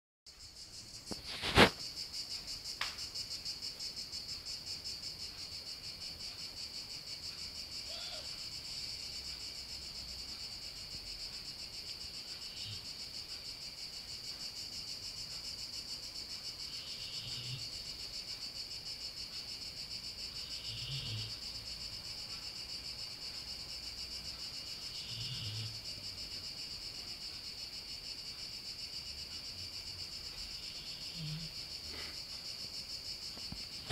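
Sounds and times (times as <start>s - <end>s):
crickets trilling: 0.3s - 33.9s
pet snoring softly: 16.7s - 17.8s, 20.4s - 21.5s, 24.9s - 25.8s, 30.6s - 32.2s.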